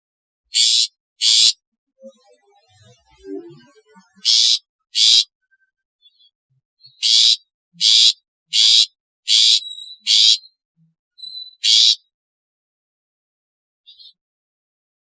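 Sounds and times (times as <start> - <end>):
bird harsh calls: 0.5 - 1.6, 4.2 - 5.3, 6.9 - 10.6, 11.2 - 12.1.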